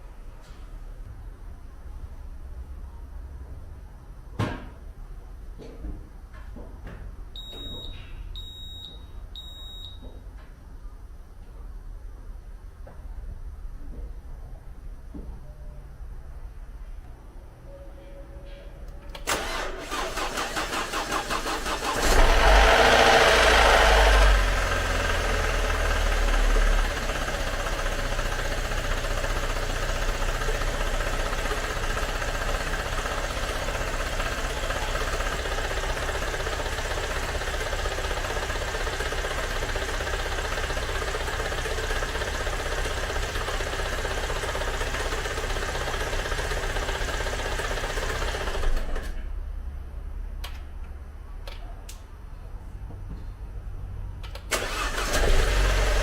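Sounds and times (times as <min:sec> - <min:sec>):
car engine starting and revving: 0:19.3 - 0:27.8, 0:54.4 - 0:56.0
engine idling: 0:19.4 - 0:48.7.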